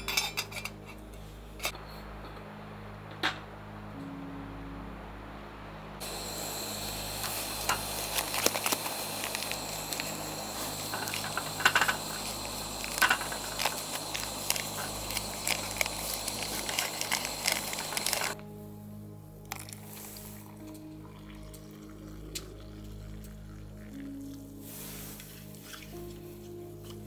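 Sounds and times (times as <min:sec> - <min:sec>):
steady low hum: 0:00.0 - 0:24.6
food sizzling in a pan: 0:06.0 - 0:18.4, 0:24.5 - 0:26.2.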